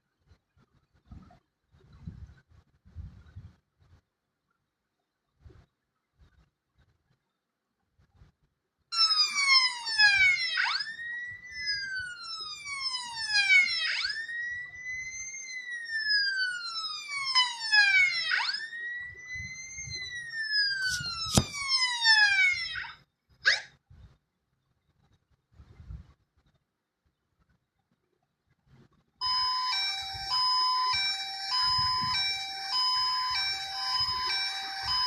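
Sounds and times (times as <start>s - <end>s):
ambulance siren wailing: 8.9s - 23.0s, 29.2s - 35.0s.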